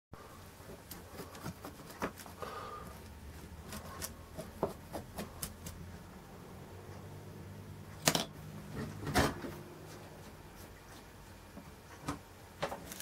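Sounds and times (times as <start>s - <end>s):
low steady hum: 0.2s - 13.0s.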